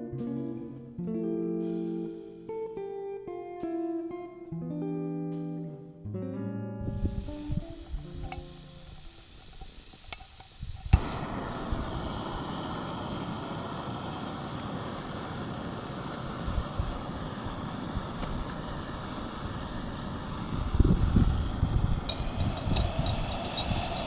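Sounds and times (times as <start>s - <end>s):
wind gusting against tent: 6.8s - 8.4s, 10.6s - 24.0s
wind rumble on microphone: 6.8s - 9.1s, 10.5s - 24.0s
sharp ticks: 22.1s - 24.0s.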